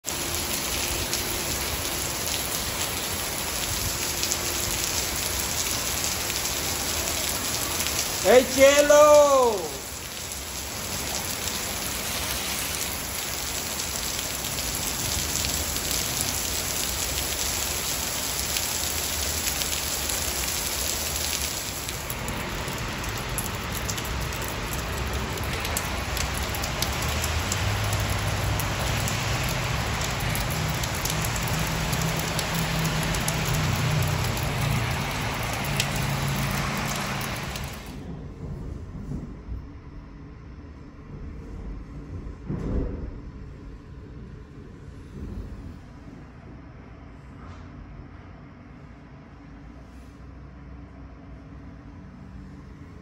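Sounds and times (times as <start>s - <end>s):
heavy rain pattering: 0.0s - 39.3s
low rumble: 38.0s - 47.4s.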